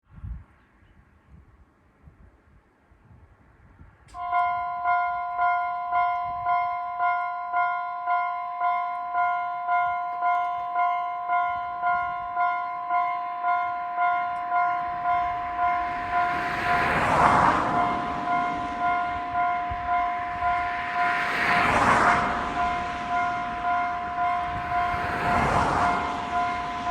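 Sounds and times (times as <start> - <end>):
train passing: 4.0 - 26.9
level crossing warning bell: 4.2 - 26.9.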